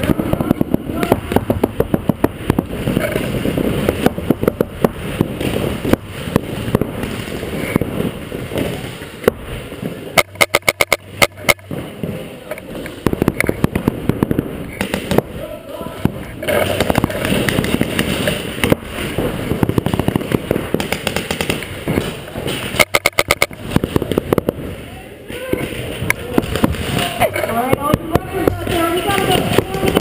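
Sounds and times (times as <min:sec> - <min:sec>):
paintball marker shots: 0:10.2 - 0:11.7, 0:14.7 - 0:15.3, 0:16.4 - 0:18.9, 0:19.6 - 0:24.6.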